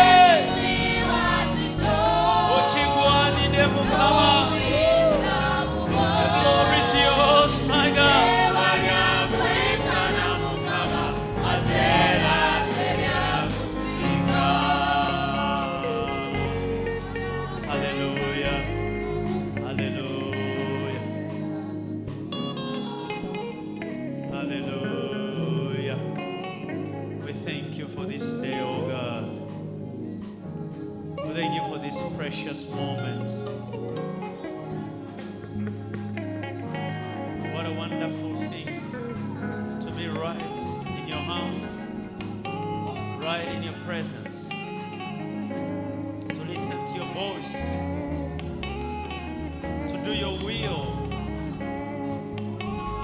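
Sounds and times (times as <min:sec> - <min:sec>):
backing band: 0:00.0 - 0:24.1
voices singing gospel music: 0:00.0 - 0:53.0.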